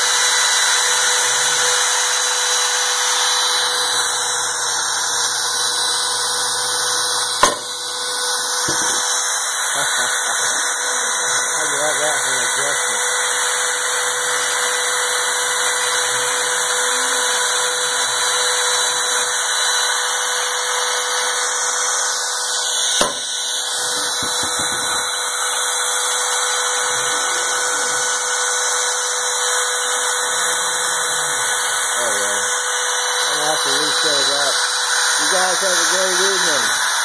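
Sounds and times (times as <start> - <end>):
milling spindle whining: 23.2 - 37.0.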